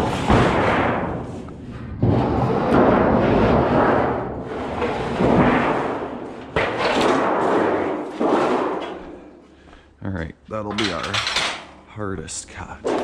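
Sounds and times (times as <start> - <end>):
steel sheet flexing and rumbling: 0.0 - 9.4.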